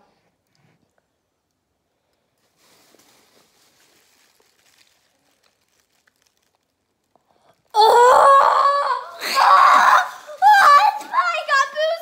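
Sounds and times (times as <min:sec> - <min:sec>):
girl shrieking: 0:07.8 - 0:12.0.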